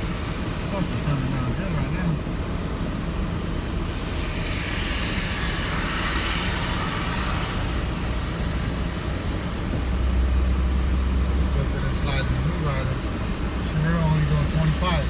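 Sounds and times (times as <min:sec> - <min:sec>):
engine and tyre rumble: 0:00.0 - 0:15.0
hiss: 0:03.9 - 0:08.2.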